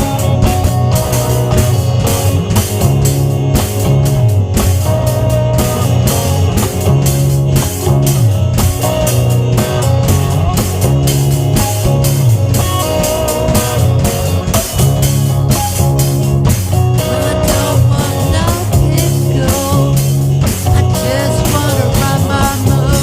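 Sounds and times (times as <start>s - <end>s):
drum kit beat: 0.0s - 23.0s
electric guitar: 0.0s - 23.0s.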